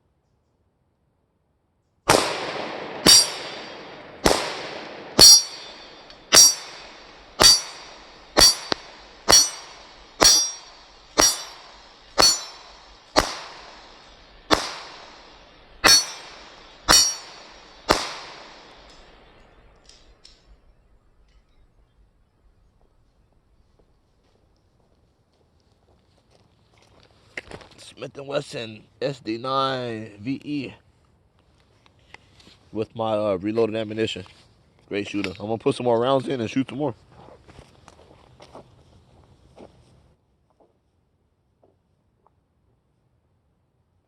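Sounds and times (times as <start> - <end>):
pistol shots with echo: 2.1 - 20.2.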